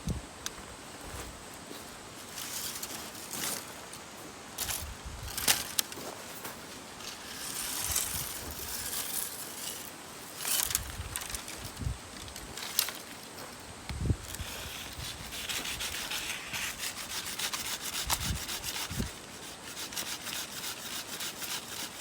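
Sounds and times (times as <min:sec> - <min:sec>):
steady outdoor hiss: 0:00.0 - 0:22.0
gear rustling and clicking: 0:04.6 - 0:06.1, 0:07.0 - 0:13.4.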